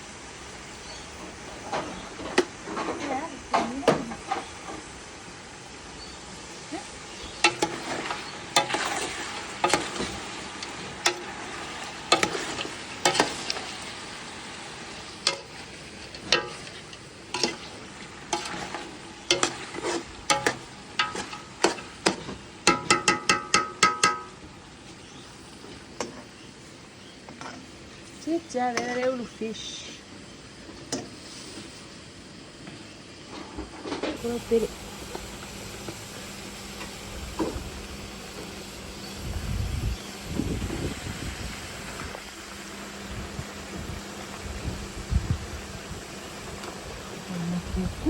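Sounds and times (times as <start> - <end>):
food sizzling in a pan: 0.0 - 23.7, 34.2 - 48.0.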